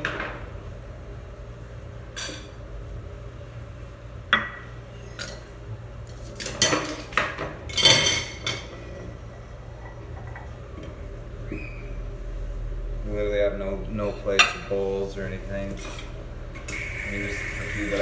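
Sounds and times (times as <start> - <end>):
dishes and cutlery clattering: 6.3 - 8.8.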